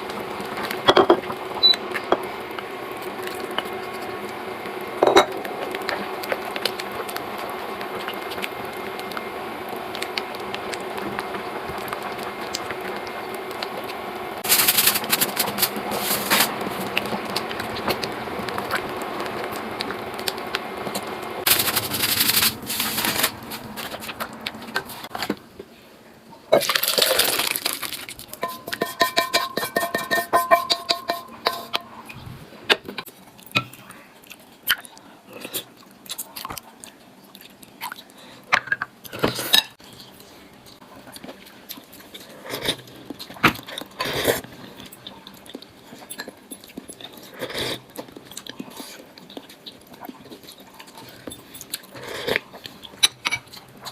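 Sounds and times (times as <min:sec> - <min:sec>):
tableware clinking against bowls: 0:00.9 - 0:01.2, 0:05.0 - 0:05.4, 0:28.4 - 0:31.9, 0:53.0 - 0:53.5.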